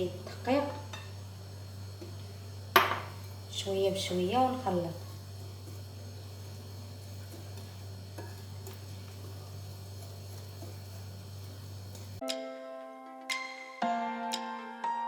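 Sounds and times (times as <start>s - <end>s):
low steady mixer hum: 0.0s - 12.2s
soft background music: 12.2s - 15.0s.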